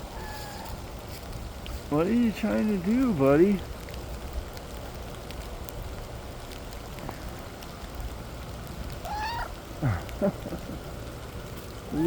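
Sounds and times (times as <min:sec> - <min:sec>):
steady rain: 0:00.0 - 0:12.0
cat meowing: 0:09.0 - 0:09.5.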